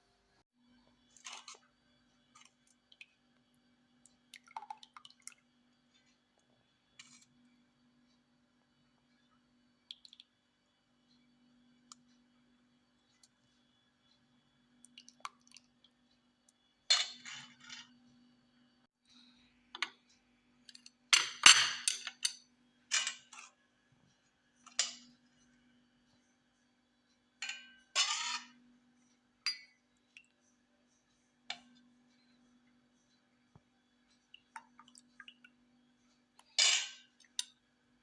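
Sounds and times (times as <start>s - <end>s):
glass and kitchenware clinking: 21.2s - 22.4s.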